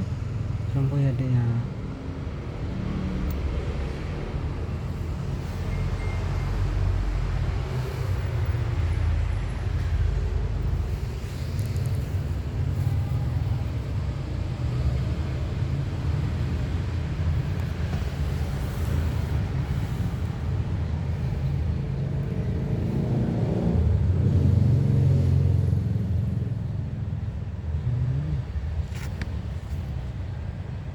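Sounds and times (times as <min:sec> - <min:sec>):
road vehicle rumbling: 0:00.0 - 0:30.9.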